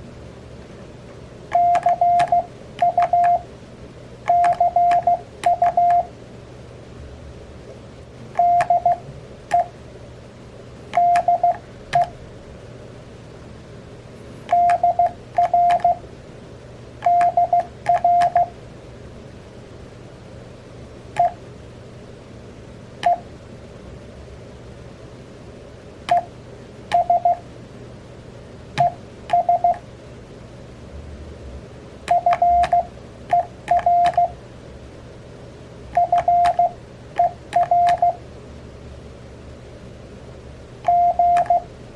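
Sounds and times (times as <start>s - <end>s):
morse code beeps: 1.5s - 3.5s, 4.3s - 6.1s, 8.4s - 9.7s, 11.0s - 12.1s, 14.5s - 16.0s, 17.0s - 18.5s, 26.9s - 27.4s, 28.8s - 29.8s, 32.1s - 34.4s, 36.0s - 38.2s, 40.9s - 41.7s.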